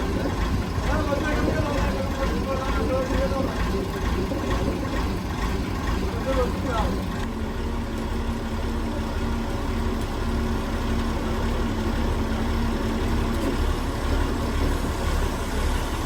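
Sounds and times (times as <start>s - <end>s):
machinery low rumble: 0.0s - 9.9s.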